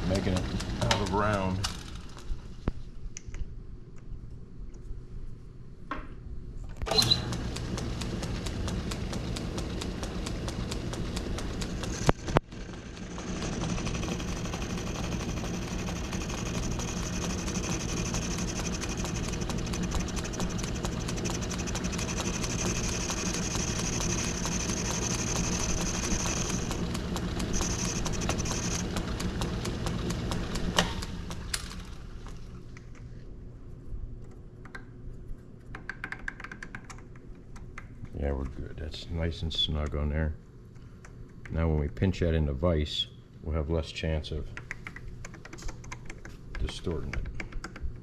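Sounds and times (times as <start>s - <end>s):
metal lathe running: 0.0s - 2.3s, 6.9s - 32.5s
high cutting whine: 6.9s - 32.4s.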